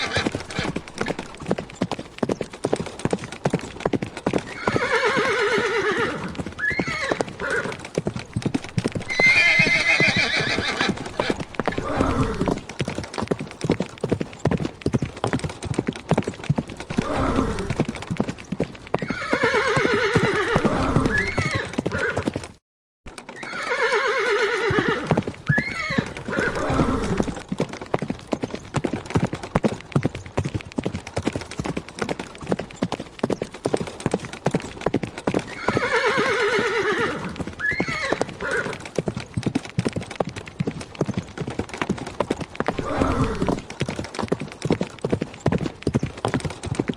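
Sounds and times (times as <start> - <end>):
horse neighing: 0.0 - 1.3, 4.4 - 7.8, 8.8 - 12.8, 16.9 - 17.8, 19.0 - 22.3, 23.4 - 27.4, 35.5 - 38.8, 42.7 - 43.6
horse hooves clip-clopping: 0.0 - 46.9.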